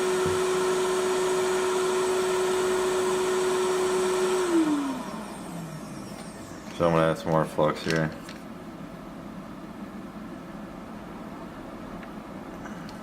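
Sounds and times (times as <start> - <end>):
hot air blower whirring: 0.0 - 8.8
fan spinning down: 0.0 - 9.5.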